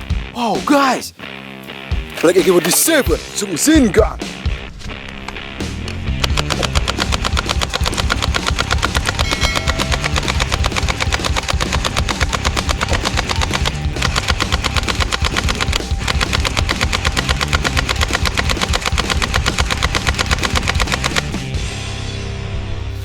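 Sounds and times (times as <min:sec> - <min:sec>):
automatic gunfire: 0:06.2 - 0:21.4.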